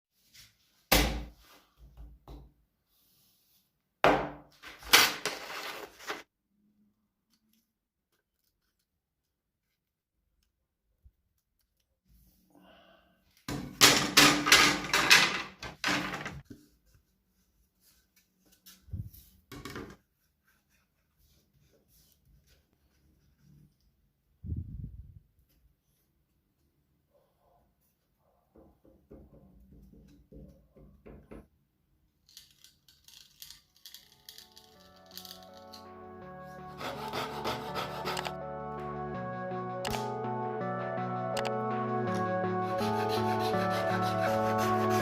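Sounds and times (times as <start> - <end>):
scraping on wood: 36.7 - 38.3.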